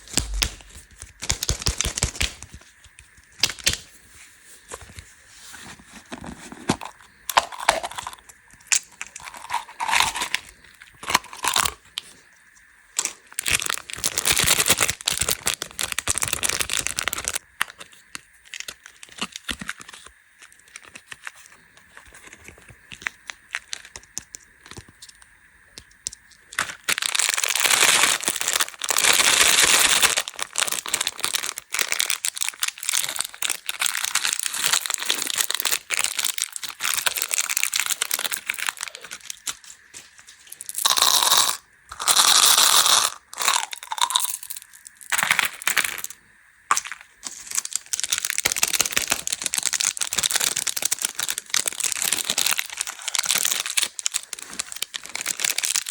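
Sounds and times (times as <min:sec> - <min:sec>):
wrappers crinkling and tearing: 0:13.4 - 0:24.0, 0:26.5 - 0:46.1, 0:46.7 - 0:55.9.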